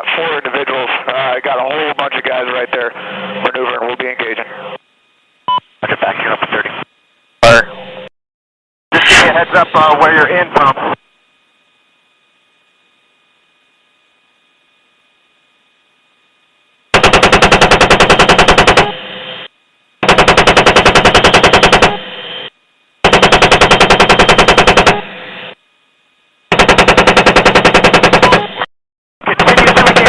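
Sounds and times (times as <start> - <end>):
faint radio hiss and hum: 0.0 - 7.8, 8.9 - 16.9
chain gun firing bursts: 17.0 - 18.9, 20.0 - 22.0, 23.0 - 25.0, 26.5 - 28.5.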